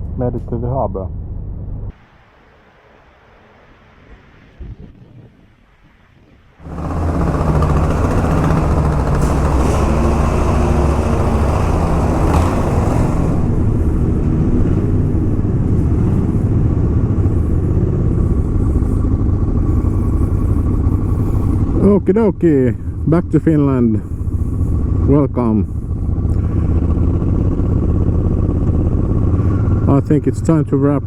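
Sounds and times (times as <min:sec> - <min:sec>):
wind and road noise: 0:00.0 - 0:31.0
motorcycle engine running: 0:06.6 - 0:31.0.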